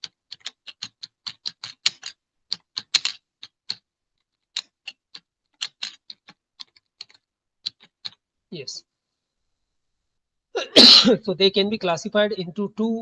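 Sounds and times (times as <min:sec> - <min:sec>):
typing on computer keyboard: 0:00.0 - 0:08.2.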